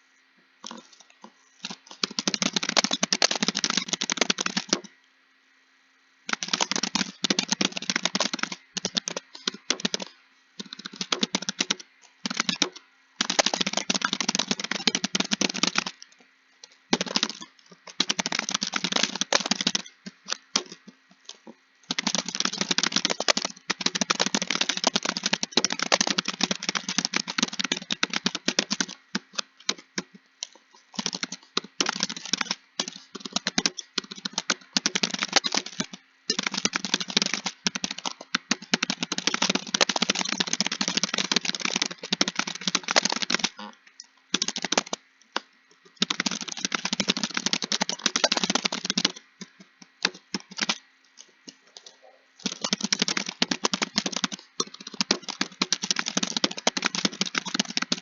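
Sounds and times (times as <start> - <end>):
typing on computer keyboard: 1.6 - 4.9, 6.3 - 43.7, 44.3 - 58.0.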